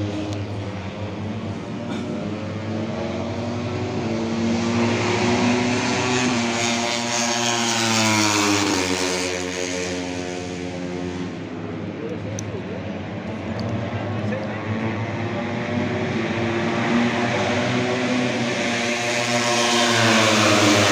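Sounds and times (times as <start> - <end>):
race car engine passing by: 2.2 - 11.5, 13.7 - 20.9.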